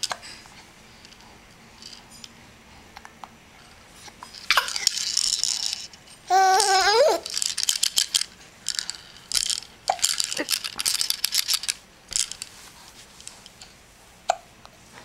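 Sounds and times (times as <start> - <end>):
handheld object rattling: 4.3 - 6.0, 6.6 - 12.6
baby squealing: 6.3 - 7.3.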